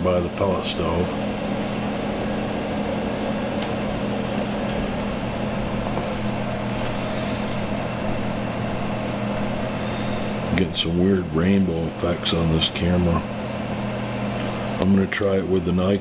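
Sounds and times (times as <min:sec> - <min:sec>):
stove fans humming: 0:00.0 - 0:16.0.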